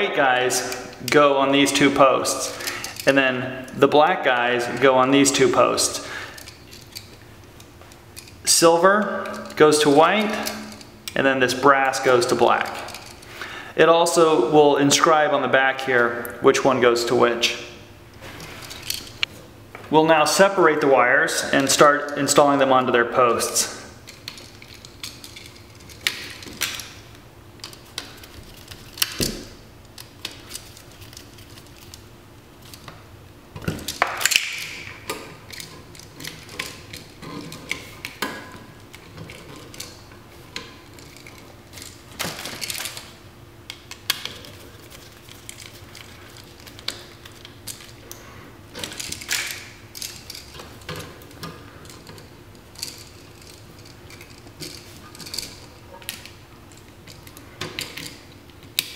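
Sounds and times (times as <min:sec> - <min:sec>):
metal clicks and scrapes of wiring: 0:09.2 - 0:13.3, 0:18.2 - 0:19.3, 0:24.0 - 0:33.0, 0:33.6 - 0:58.9.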